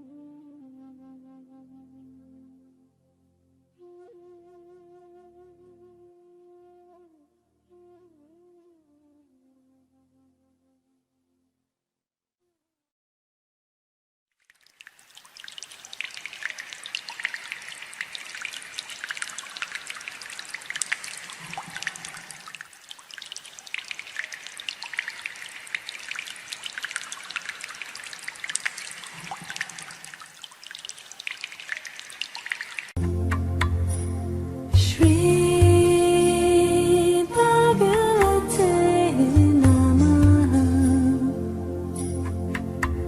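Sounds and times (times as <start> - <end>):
water trickling and dripping: 14.4 - 36.2.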